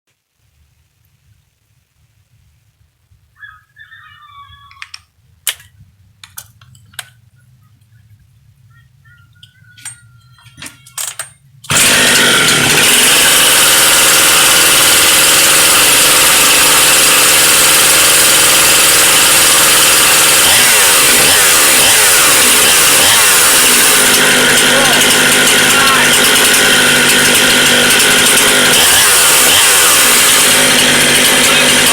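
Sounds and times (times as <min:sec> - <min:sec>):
clicks and handling noises: 0:04.7 - 0:08.1
chainsaw running at high speed: 0:11.7 - 0:31.9.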